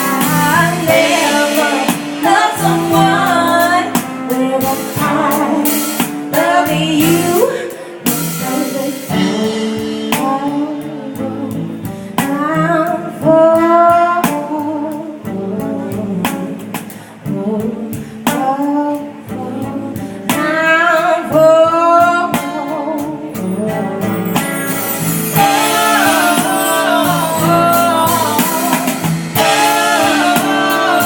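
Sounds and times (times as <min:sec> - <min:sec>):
steady percussive beat: 0:00.0 - 0:07.5, 0:24.0 - 0:31.0
guitar: 0:00.0 - 0:31.0
person singing: 0:00.0 - 0:31.0.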